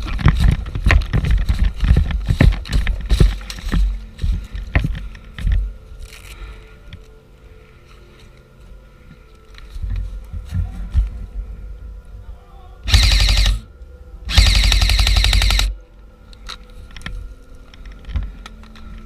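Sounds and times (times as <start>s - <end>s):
airsoft rifle full-auto bursts: 12.9s - 13.6s, 14.3s - 15.8s.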